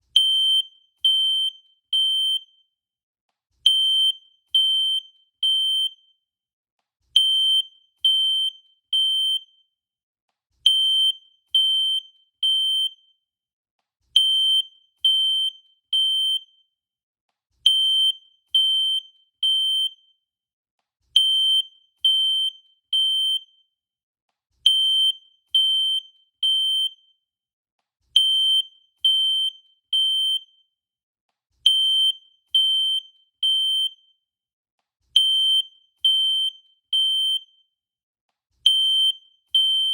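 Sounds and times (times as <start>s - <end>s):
fire alarm beeping: 35.2s - 37.6s, 38.7s - 39.9s.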